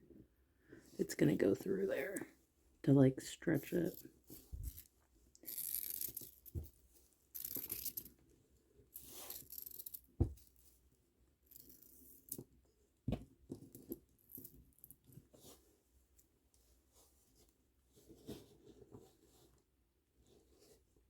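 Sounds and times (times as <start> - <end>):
string through plastic beads rustling: 3.5 - 8.2, 8.9 - 10.8.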